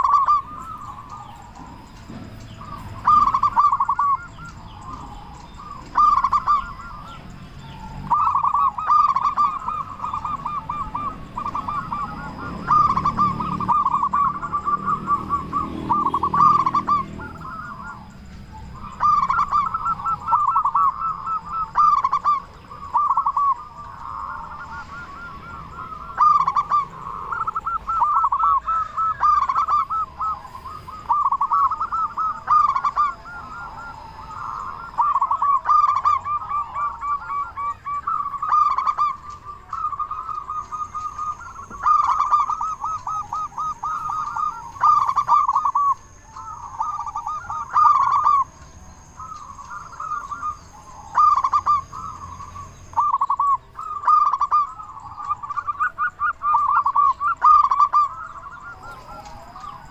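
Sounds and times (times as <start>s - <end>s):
doves cooing: 0.0s - 59.9s.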